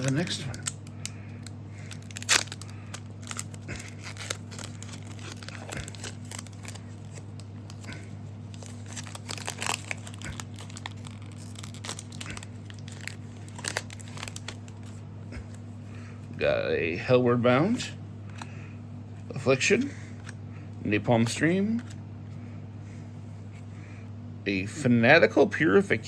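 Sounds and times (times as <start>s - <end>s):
cards being handled: 0.0s - 1.2s
wrapper tearing and crinkling: 0.0s - 15.0s.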